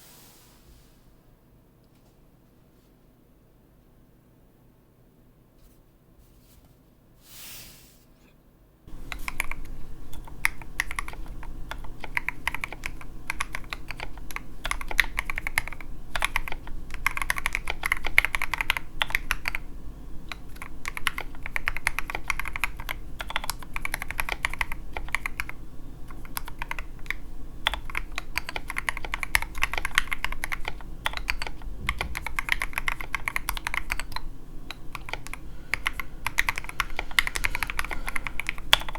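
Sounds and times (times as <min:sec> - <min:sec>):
fast mechanical keyboard typing: 0:08.9 - 0:38.9.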